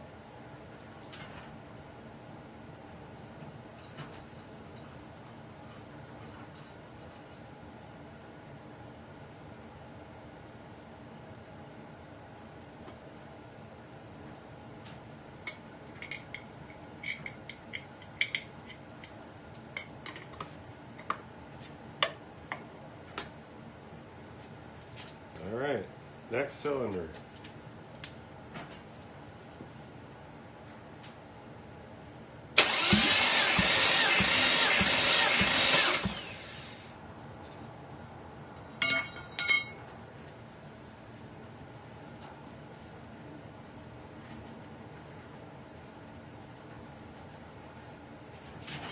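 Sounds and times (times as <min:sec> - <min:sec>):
engine cranking on starter: 0:32.6 - 0:36.8.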